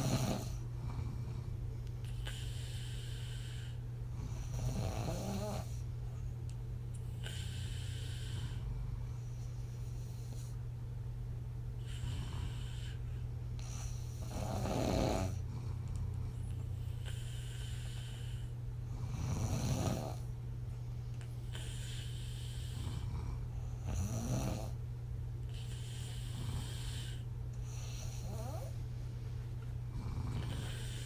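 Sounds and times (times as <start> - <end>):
woman snoring: 0.0 - 1.4, 2.1 - 5.8, 11.8 - 13.0, 13.6 - 15.5, 16.9 - 20.2, 21.5 - 24.8, 25.5 - 28.8, 29.9 - 31.0
steady low hum: 0.0 - 31.0.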